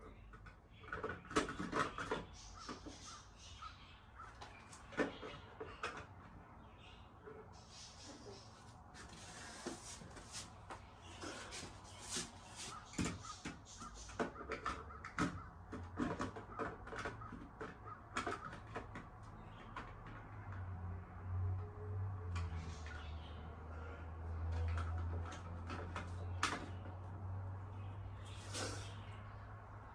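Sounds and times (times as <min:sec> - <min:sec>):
plastic parts clicking and scraping: 0:00.0 - 0:03.0, 0:04.5 - 0:06.4, 0:11.1 - 0:20.7, 0:24.2 - 0:27.3.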